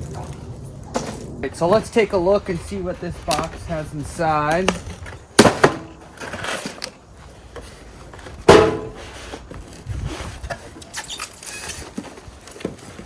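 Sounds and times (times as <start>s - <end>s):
cardboard rustling and scraping: 1.0s - 13.0s
loud knock: 8.5s - 9.0s.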